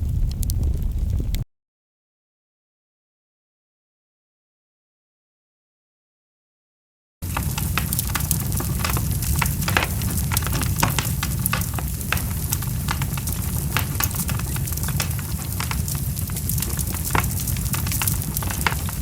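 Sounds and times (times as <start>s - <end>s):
fire crackling: 0.0s - 1.4s, 7.2s - 19.0s
low rumble of burning: 0.0s - 1.4s, 7.2s - 19.0s.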